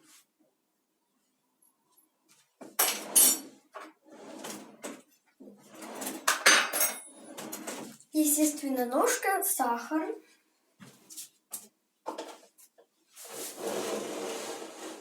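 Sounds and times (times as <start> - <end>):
kitchen things clattering and rustling: 2.6 - 8.1, 12.1 - 12.6.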